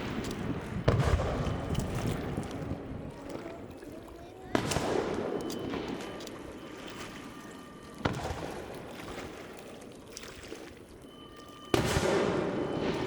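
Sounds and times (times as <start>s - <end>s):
fireworks booming: 0.0s - 2.8s, 4.5s - 6.1s, 8.0s - 8.7s, 11.7s - 13.0s
rolling echo and crackle: 0.0s - 10.0s, 10.6s - 13.0s.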